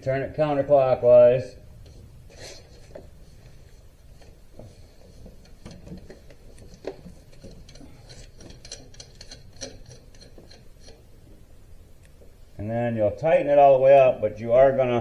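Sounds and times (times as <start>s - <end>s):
metal parts clicking and tapping: 5.4s - 11.0s.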